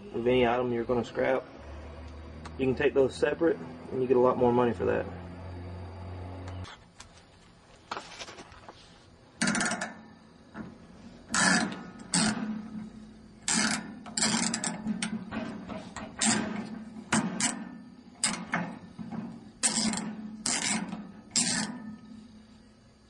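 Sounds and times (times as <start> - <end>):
scrap metal clanking: 9.4 - 22.4.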